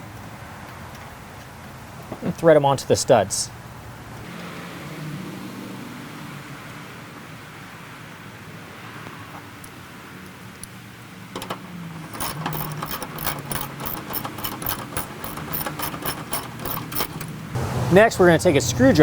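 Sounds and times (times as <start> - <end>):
hand tool metallic clicking: 11.4 - 17.4.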